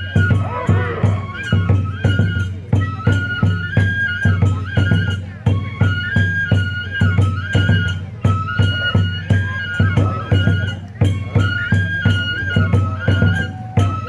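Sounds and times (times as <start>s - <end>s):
bamboo flute playing: 0.0s - 14.0s
taiko drum beats: 0.0s - 14.0s.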